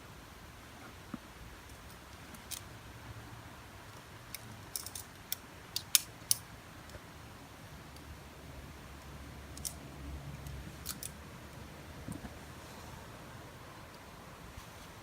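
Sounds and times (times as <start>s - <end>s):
climbing hardware clinking: 4.3s - 6.4s, 10.4s - 11.2s.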